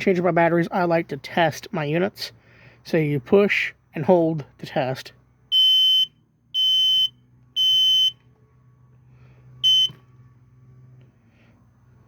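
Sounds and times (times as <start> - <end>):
smoke alarm beeps: 5.5 - 8.2, 9.6 - 10.0.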